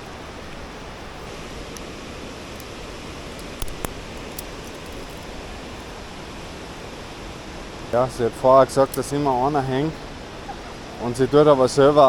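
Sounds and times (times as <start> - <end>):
rushing falling water: 0.0 - 12.0.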